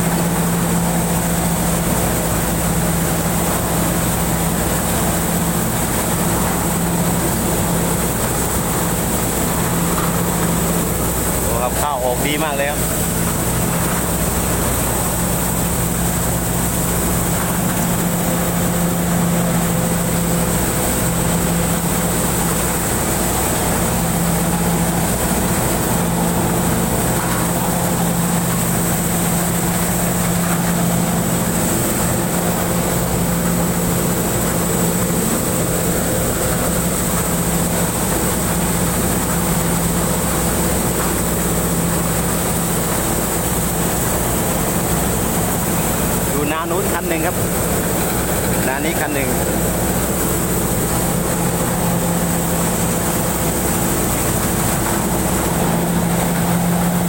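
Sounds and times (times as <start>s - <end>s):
combine harvester drone: 0.0s - 57.0s.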